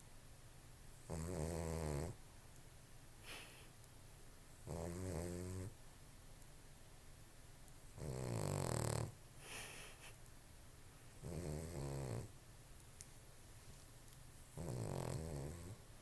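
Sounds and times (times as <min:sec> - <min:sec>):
dog snoring loudly: 0:01.1 - 0:02.2, 0:04.6 - 0:05.7, 0:08.0 - 0:09.2, 0:11.2 - 0:12.3, 0:14.6 - 0:15.8
soft breathing: 0:09.4 - 0:10.2.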